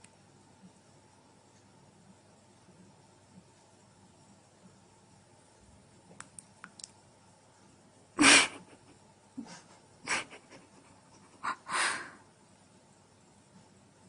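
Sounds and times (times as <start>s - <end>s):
cat huffing: 11.3s - 12.2s.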